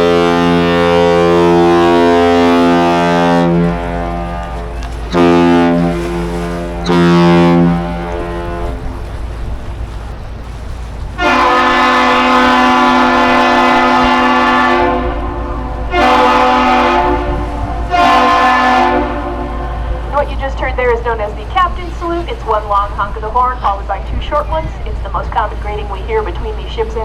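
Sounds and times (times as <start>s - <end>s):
higher chord horn blasts: 0.0s - 9.2s, 11.2s - 20.5s
deep ship horn blasts: 0.0s - 27.0s.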